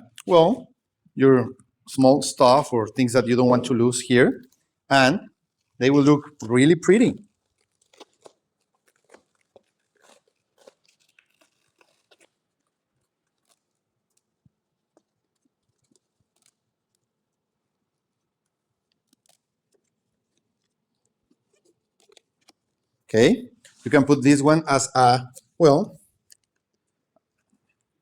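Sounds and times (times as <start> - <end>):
faint clicks and rustles: 5.4 - 5.8, 7.2 - 23.9, 25.3 - 28.0.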